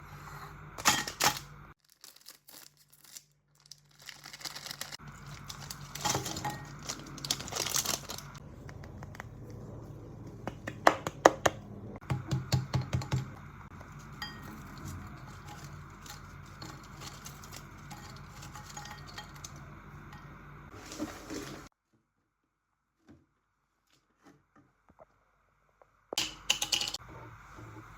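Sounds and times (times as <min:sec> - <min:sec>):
packaging crinkling and tearing: 0:01.2 - 0:08.4
steady low hum: 0:05.0 - 0:21.7
utensils and dishes clinking: 0:05.2 - 0:08.3, 0:13.9 - 0:21.7, 0:26.2 - 0:27.0.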